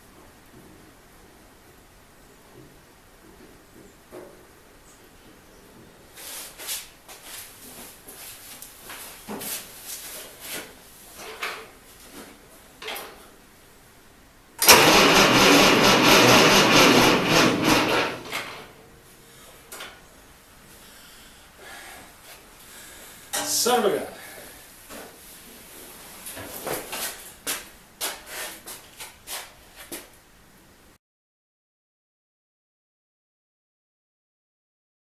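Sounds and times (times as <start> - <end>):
tractor starter cranking engine: 14.6 - 18.8.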